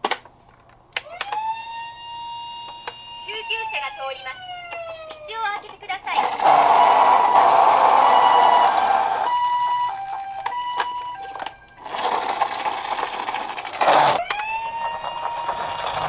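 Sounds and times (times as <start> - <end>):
two-tone ambulance siren: 1.0 - 16.0.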